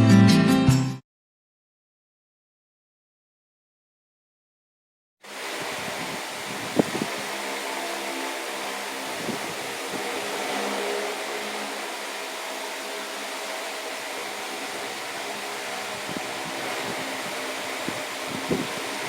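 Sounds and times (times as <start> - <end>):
fan motor hum: 5.2 - 19.0
wall fan air rush: 5.2 - 19.0.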